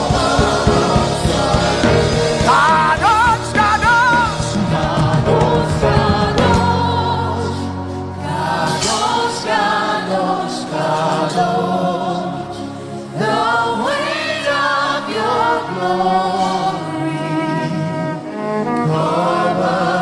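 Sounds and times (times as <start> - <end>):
choir singing slow gospel song: 0.0 - 20.0
soft instrumental backing: 0.0 - 20.0.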